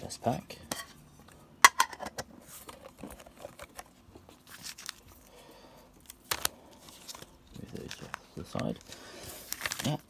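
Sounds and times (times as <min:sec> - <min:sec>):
card packaging rustling and tapping: 0:06.1 - 0:10.0.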